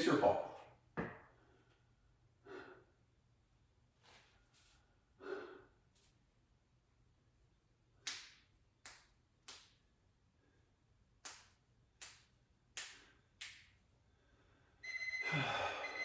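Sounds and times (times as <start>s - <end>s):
man breathing out sharply: 15.2s - 16.0s.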